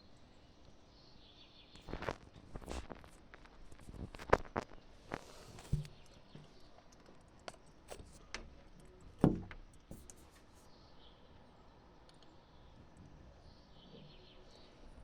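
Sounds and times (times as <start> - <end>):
sharp clicks and knocks: 5.5 - 10.5.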